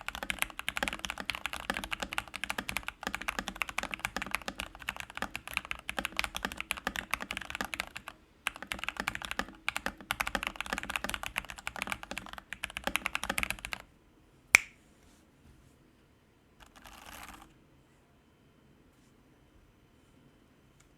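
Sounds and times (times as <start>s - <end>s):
fast typing on mechanical keyboard: 0.0s - 13.8s
soft rustle: 14.8s - 15.9s.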